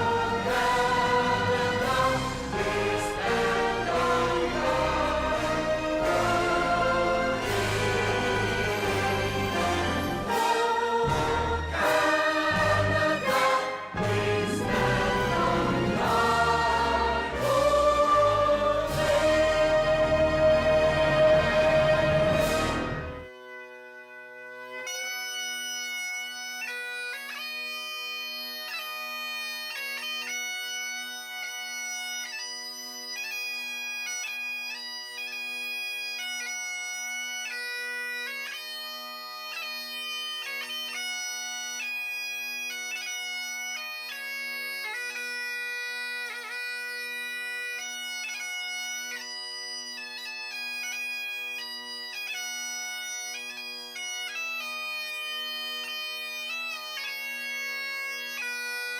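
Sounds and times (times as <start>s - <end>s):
bagpipes playing a melody: 0.0s - 58.9s.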